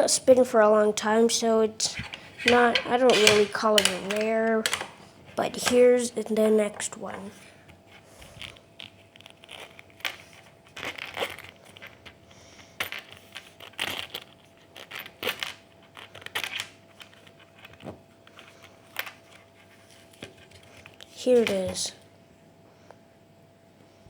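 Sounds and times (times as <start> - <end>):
faint steady hum: 0.0 - 24.0
handling clicks and rustles: 1.8 - 21.8.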